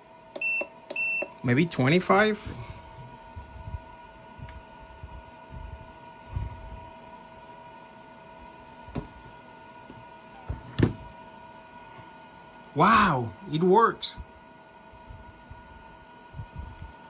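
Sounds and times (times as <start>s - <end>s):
steady electrical hum: 0.0s - 17.0s.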